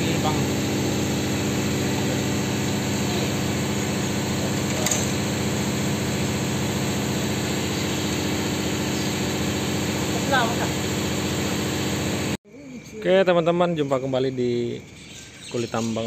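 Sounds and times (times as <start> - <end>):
engine idling: 0.0 - 12.4.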